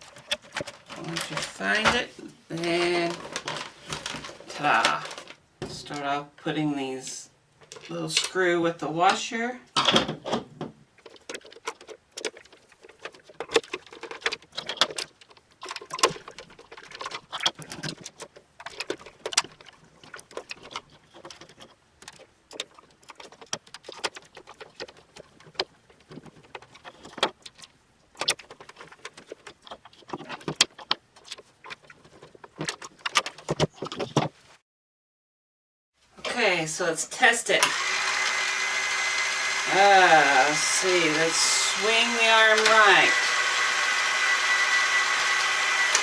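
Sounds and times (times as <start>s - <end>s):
plastic toy parts clicking and rattling: 0.0s - 6.1s, 7.6s - 8.4s, 11.0s - 34.3s.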